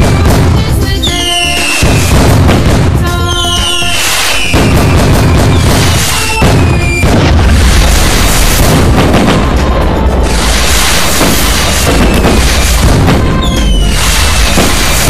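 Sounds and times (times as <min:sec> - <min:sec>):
firecrackers and firework booms: 0:00.0 - 0:15.0
whistling firework: 0:00.0 - 0:15.0.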